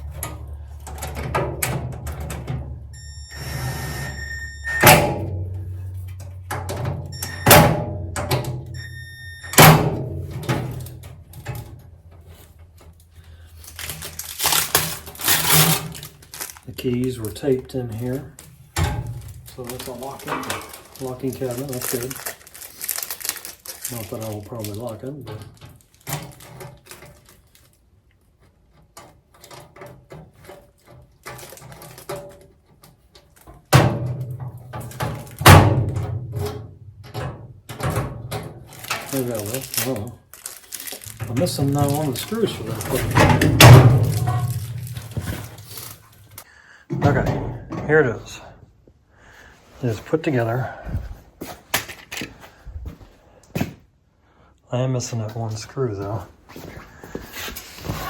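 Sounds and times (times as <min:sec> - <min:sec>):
metal clatter and scraping: 0:00.0 - 0:03.0, 0:04.8 - 0:08.8, 0:09.6 - 0:22.5, 0:28.4 - 0:48.1
metal door thunk: 0:04.7 - 0:08.8, 0:09.5 - 0:11.8, 0:18.8 - 0:19.6, 0:33.8 - 0:38.6, 0:41.2 - 0:45.6, 0:46.9 - 0:48.0
metal cart hardware rattling: 0:13.7 - 0:16.6, 0:18.8 - 0:22.1, 0:34.6 - 0:46.4.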